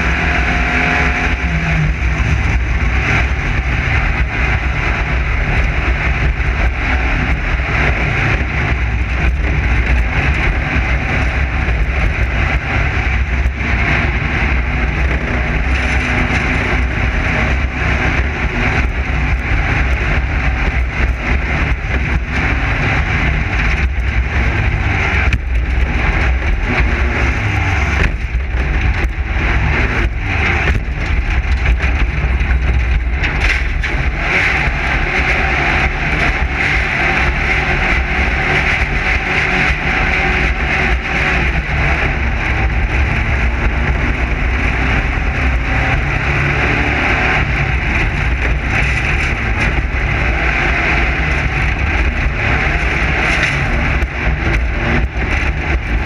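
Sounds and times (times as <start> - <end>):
buggy engine droning: 0.0 - 56.0
rattles and knocks: 23.2 - 34.2.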